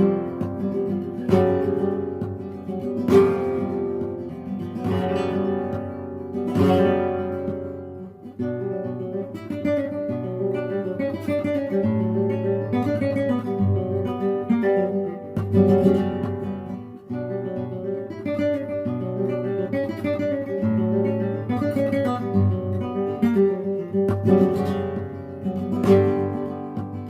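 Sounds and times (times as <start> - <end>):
acoustic guitar music: 0.0 - 27.0.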